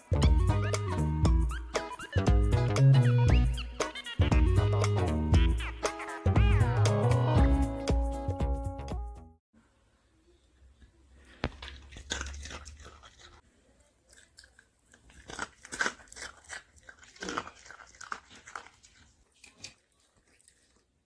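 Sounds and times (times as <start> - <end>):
dog crunching hard treat: 11.4 - 13.4, 14.0 - 20.9.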